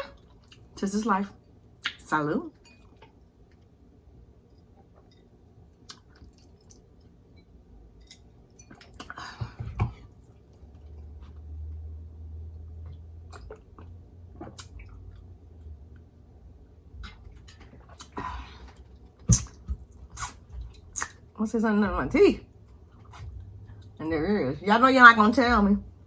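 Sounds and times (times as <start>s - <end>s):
quiet chewing with mouth clicks: 4.4s - 9.2s, 12.8s - 16.1s.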